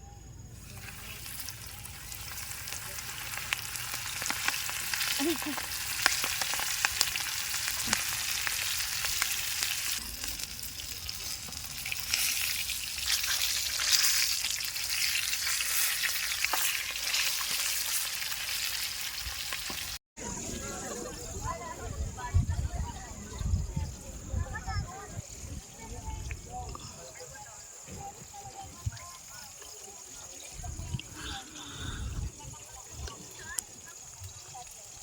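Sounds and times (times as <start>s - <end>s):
crackles and pops: 0.6s - 20.0s
food sizzling in a pan: 0.6s - 20.0s, 32.2s - 35.0s.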